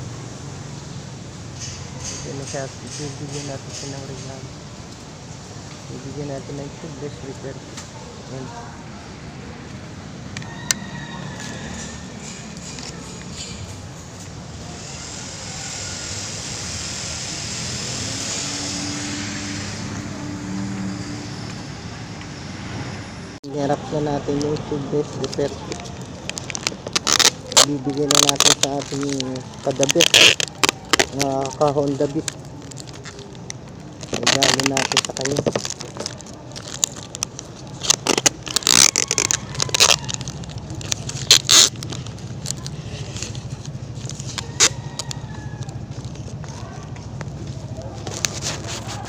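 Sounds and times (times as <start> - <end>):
vehicle passing by: 5.2 - 26.5
scraping and crackling handling noises: 10.4 - 14.4, 24.4 - 49.0.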